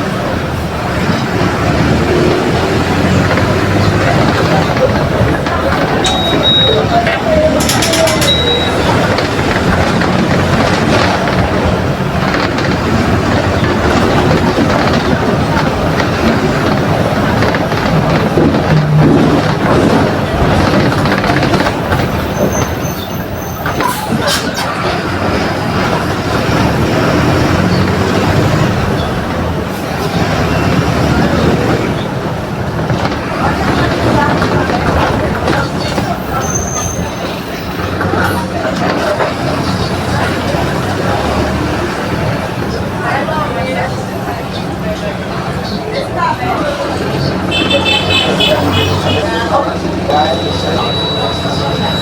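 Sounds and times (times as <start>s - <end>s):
bus body rattling: 0.0s - 52.0s
bus diesel engine rumbling: 0.0s - 52.0s
road noise: 0.0s - 52.0s.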